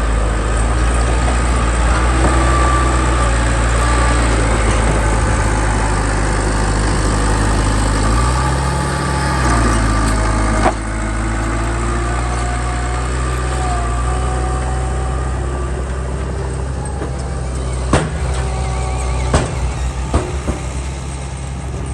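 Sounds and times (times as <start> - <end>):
heavy machine engine running: 0.0 - 21.9
sharp knocks: 17.9 - 21.1.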